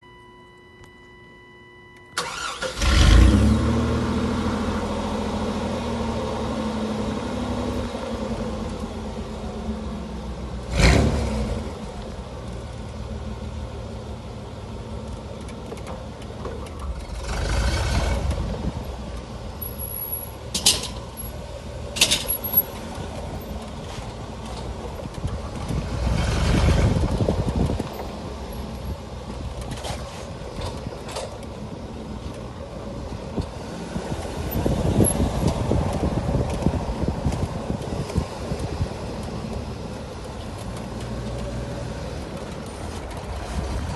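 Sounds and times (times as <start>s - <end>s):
car engine starting and idling: 0.1s - 43.9s
engine revving: 2.2s - 8.6s, 10.7s - 11.9s, 17.0s - 18.7s, 25.6s - 27.6s.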